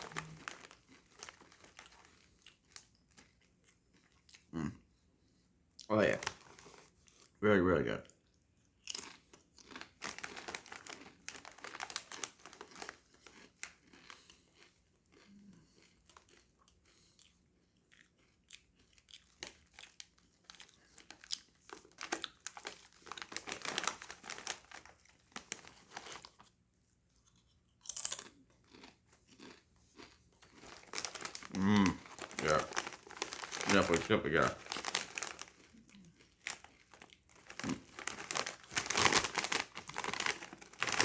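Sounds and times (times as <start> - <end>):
chip bag crinkling: 0.0 - 4.1, 6.0 - 7.0, 8.9 - 15.3, 19.2 - 26.5, 27.8 - 41.0
person crunching chips: 0.0 - 4.6, 8.8 - 17.3, 17.9 - 26.4, 27.4 - 41.0.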